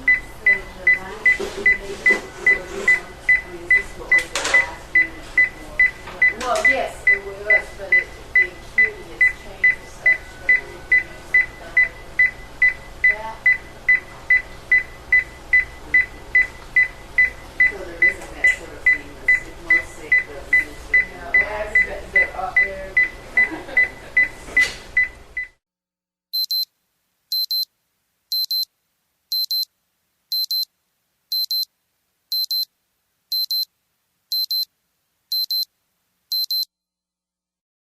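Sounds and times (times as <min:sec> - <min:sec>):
patient monitor beeping fast: 0:00.0 - 0:24.4, 0:26.4 - 0:26.7, 0:27.3 - 0:27.6, 0:28.3 - 0:28.7, 0:29.3 - 0:29.7, 0:30.3 - 0:30.7, 0:31.3 - 0:31.7, 0:32.3 - 0:32.7, 0:33.3 - 0:33.7, 0:34.3 - 0:34.7, 0:35.3 - 0:35.7, 0:36.3 - 0:36.7
operating room background noise: 0:00.0 - 0:25.5
higher-pitched monitor beep: 0:26.4 - 0:26.7, 0:27.3 - 0:27.6, 0:28.3 - 0:28.7, 0:29.3 - 0:29.7, 0:30.3 - 0:30.7, 0:31.3 - 0:31.7, 0:32.3 - 0:32.7, 0:33.3 - 0:33.7, 0:34.3 - 0:34.7, 0:35.3 - 0:35.7, 0:36.3 - 0:36.7.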